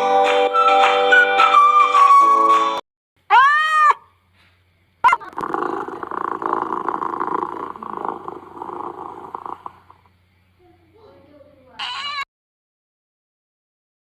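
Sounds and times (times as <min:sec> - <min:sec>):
cat purring: 0:05.1 - 0:10.1
cat meowing: 0:11.8 - 0:12.2.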